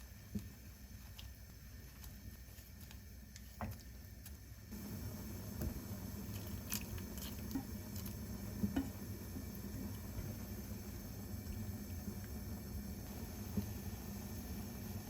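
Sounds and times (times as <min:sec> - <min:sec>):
low steady hum: 0:00.0 - 0:15.0
food squishing: 0:00.4 - 0:04.6, 0:05.6 - 0:10.3.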